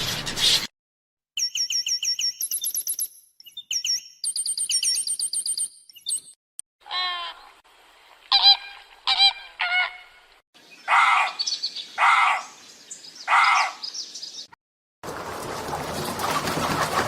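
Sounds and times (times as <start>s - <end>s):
clear bird calls: 1.4s - 7.6s, 8.3s - 14.6s
loud harsh bird calls: 8.3s - 14.2s.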